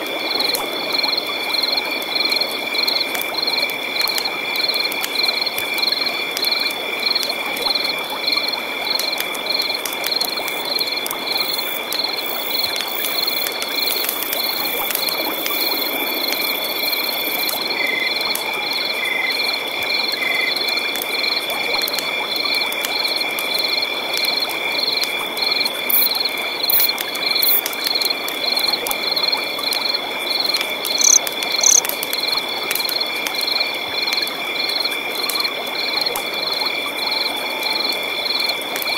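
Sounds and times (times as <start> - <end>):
frogs and insects trilling: 0.0 - 38.9
regular chirp: 31.0 - 31.8.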